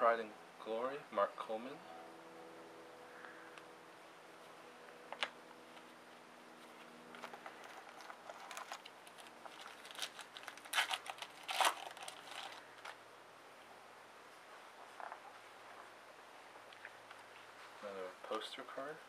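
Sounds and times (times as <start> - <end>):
foil wrapper crinkling: 7.1 - 13.0.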